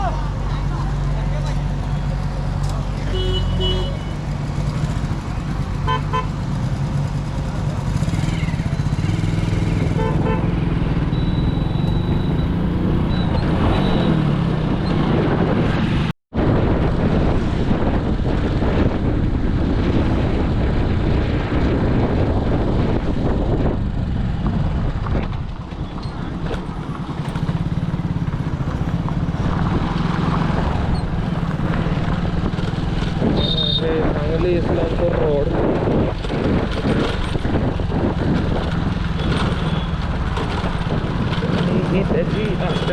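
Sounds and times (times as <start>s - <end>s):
motorcycle engine running: 0.0s - 15.6s, 16.5s - 42.9s
road and wind noise: 0.0s - 42.9s
vehicle engine running: 23.2s - 42.9s.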